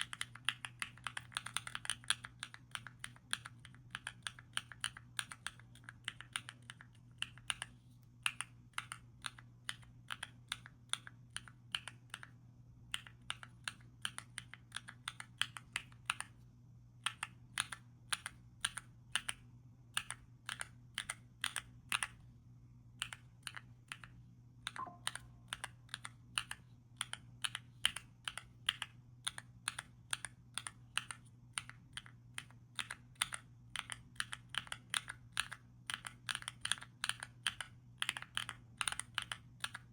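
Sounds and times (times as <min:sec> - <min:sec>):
mechanical keyboard typing: 0:00.0 - 0:16.4, 0:17.0 - 0:19.4, 0:20.0 - 0:22.2, 0:23.0 - 0:39.9
faint steady hum: 0:00.0 - 0:39.9.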